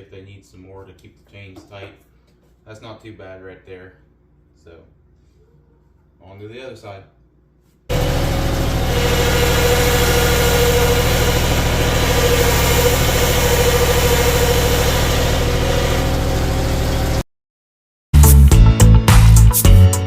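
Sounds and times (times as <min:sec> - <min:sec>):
motor running steadily: 0:07.9 - 0:17.2.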